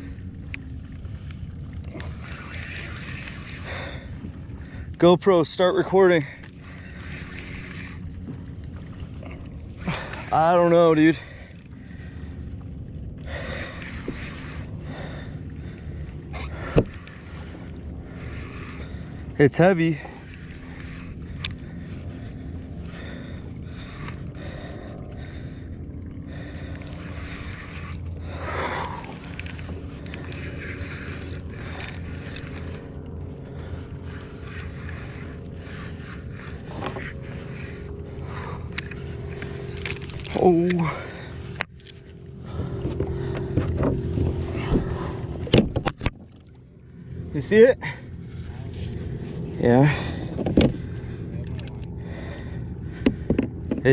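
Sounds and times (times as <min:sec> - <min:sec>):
wind and water noise: 0:00.0 - 0:53.9
fishing reel cranking with clicks: 0:01.9 - 0:04.0, 0:05.2 - 0:08.2, 0:10.0 - 0:11.7, 0:16.6 - 0:22.0, 0:22.8 - 0:24.3, 0:26.6 - 0:32.9, 0:33.8 - 0:41.0.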